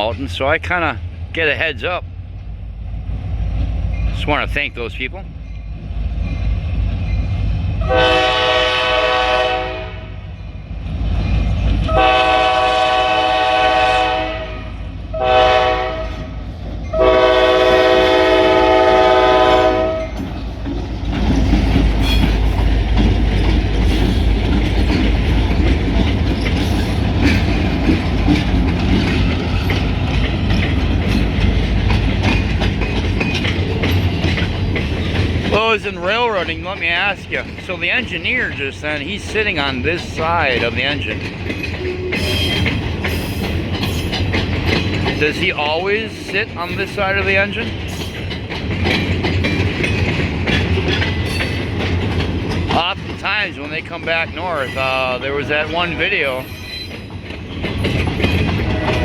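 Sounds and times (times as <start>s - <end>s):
locomotive engine rumbling: 0.0s - 59.0s
train wheels clattering on rails: 0.0s - 59.0s
locomotive air horn: 7.8s - 10.2s, 11.9s - 16.3s, 16.9s - 20.2s, 58.6s - 59.0s.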